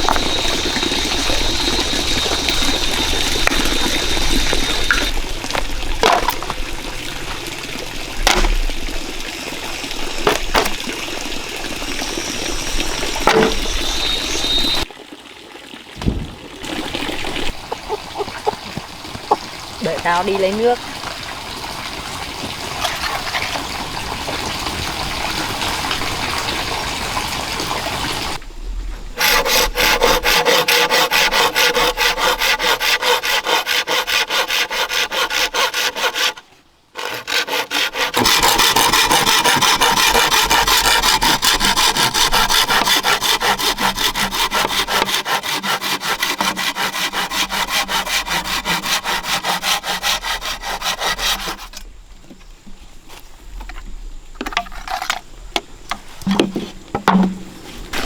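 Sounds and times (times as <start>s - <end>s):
hand saw cutting wood: 6.0s - 6.5s, 8.2s - 8.6s, 10.2s - 10.8s, 13.2s - 14.8s, 16.8s - 20.8s, 29.2s - 51.9s.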